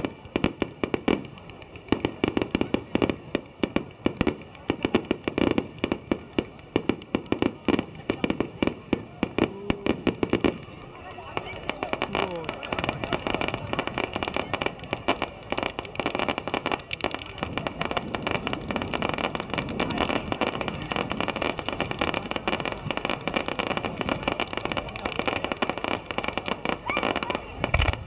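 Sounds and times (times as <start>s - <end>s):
fireworks crackling and banging: 0.0s - 28.0s.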